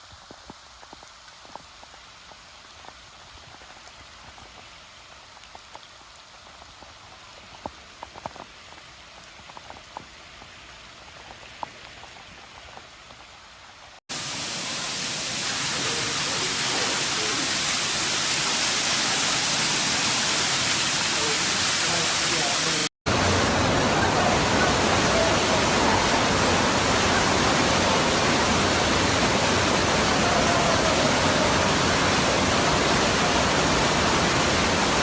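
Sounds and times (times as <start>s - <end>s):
steady rain: 0.0s - 35.0s
heavy rain rushing: 14.1s - 35.0s.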